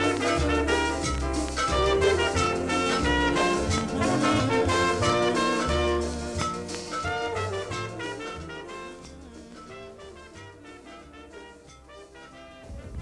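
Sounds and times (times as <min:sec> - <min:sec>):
walking bass line: 0:00.0 - 0:09.8
jazz band with brass: 0:00.0 - 0:13.0.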